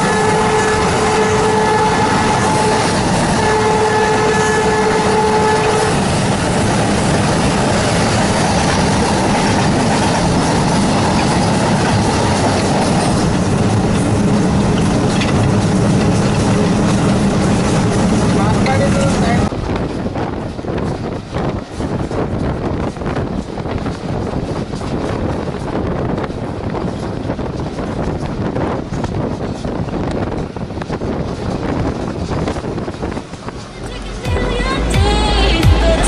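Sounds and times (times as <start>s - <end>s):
locomotive horn blasts: 0.0s - 6.1s
train rumbling on rails: 0.0s - 36.0s.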